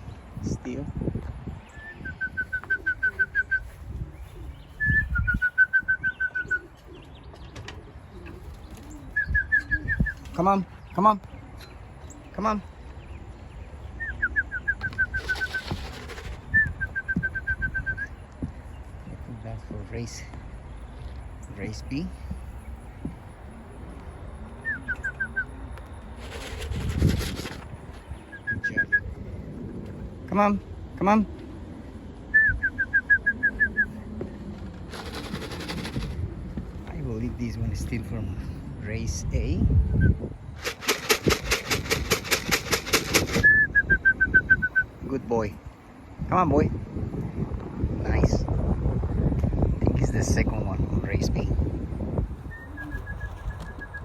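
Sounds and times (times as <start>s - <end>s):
pigeons cooing: 1.7s - 18.2s, 21.8s - 38.8s, 39.8s - 45.0s, 52.3s - 54.0s
person whistling call: 1.8s - 3.6s
wings fluttering rush: 14.6s - 17.8s, 25.9s - 28.4s, 32.6s - 36.9s, 40.6s - 43.6s.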